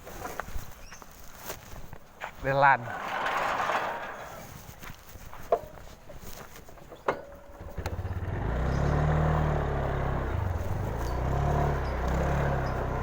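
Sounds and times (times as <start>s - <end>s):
scooter engine running: 7.4s - 13.0s.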